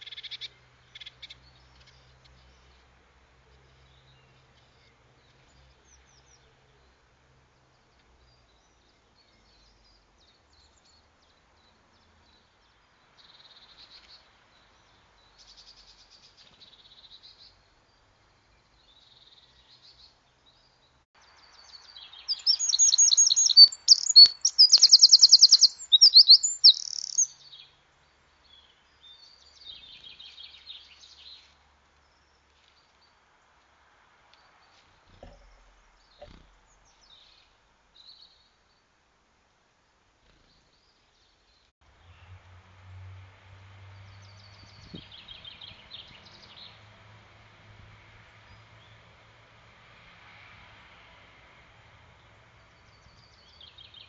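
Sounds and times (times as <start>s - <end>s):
songbird trilling: 22.0s - 27.4s.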